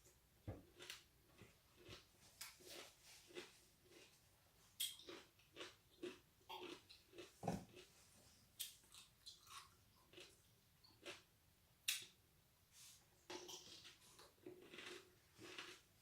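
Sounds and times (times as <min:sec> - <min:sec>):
wet crunchy chewing: 0:04.8 - 0:07.9, 0:13.4 - 0:15.9.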